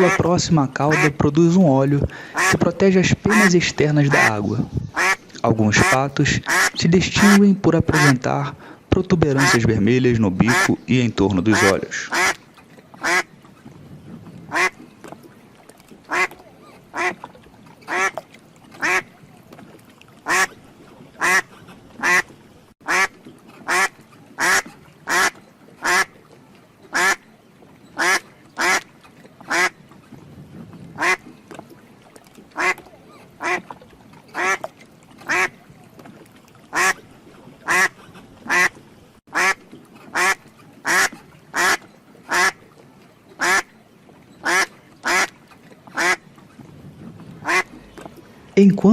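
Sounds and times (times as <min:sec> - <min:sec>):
ducks quacking: 0:00.0 - 0:01.3, 0:02.1 - 0:08.3, 0:09.2 - 0:09.7, 0:10.4 - 0:13.4, 0:14.5 - 0:14.8, 0:16.1 - 0:18.2, 0:18.8 - 0:19.2, 0:20.2 - 0:20.6, 0:21.2 - 0:26.2, 0:26.9 - 0:27.2, 0:28.0 - 0:29.8, 0:31.0 - 0:31.3, 0:32.5 - 0:35.6, 0:36.7 - 0:37.0, 0:37.6 - 0:42.6, 0:43.4 - 0:43.7, 0:44.4 - 0:46.2, 0:47.3 - 0:48.1.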